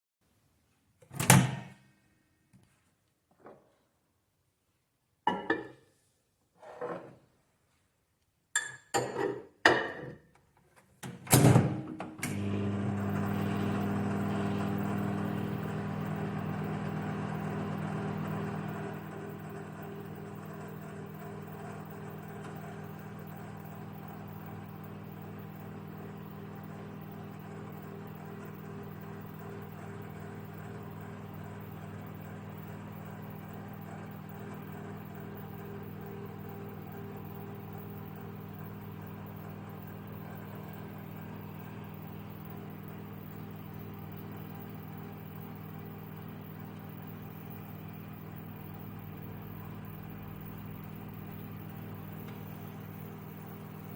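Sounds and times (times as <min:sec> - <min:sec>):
microwave oven humming: 0:11.0 - 0:53.9.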